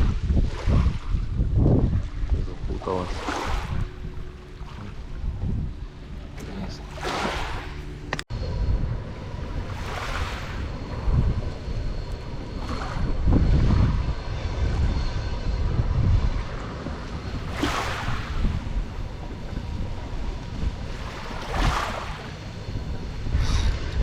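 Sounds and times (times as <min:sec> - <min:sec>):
wind rumbling on microphone: 0:00.0 - 0:24.0
small waves washing onto shore: 0:02.8 - 0:05.2, 0:06.4 - 0:08.2, 0:17.3 - 0:18.7, 0:21.0 - 0:22.4.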